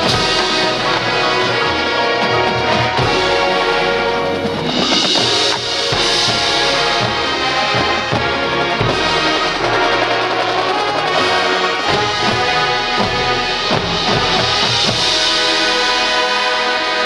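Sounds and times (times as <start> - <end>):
drum hits: 0.0 - 16.3
brass chords: 0.0 - 17.0
marching band playing: 0.0 - 17.0.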